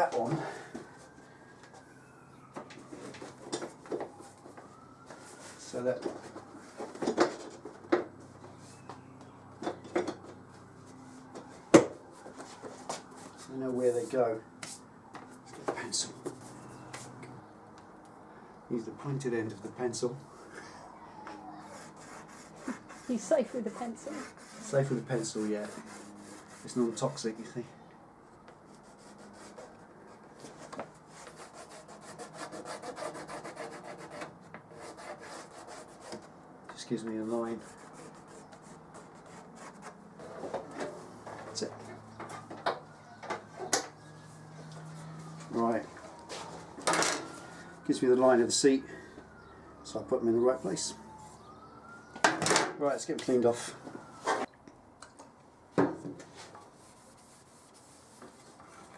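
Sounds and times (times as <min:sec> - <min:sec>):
pencil scratching: 0:21.6 - 0:27.2, 0:28.7 - 0:30.2, 0:31.1 - 0:36.3, 0:37.2 - 0:40.4.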